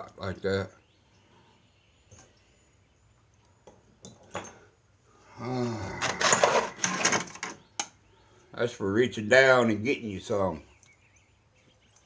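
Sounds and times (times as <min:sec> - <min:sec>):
metal tools clinking and rattling: 0:04.0 - 0:04.7, 0:06.0 - 0:07.6.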